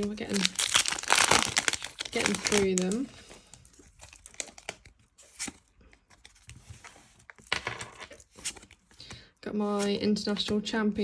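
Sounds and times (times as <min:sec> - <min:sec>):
foil wrapper crinkling and tearing: 0:00.0 - 0:05.7.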